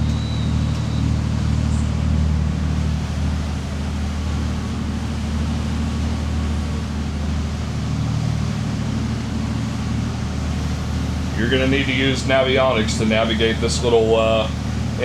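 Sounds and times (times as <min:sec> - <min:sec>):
boat diesel engines droning: 0:00.0 - 0:15.0.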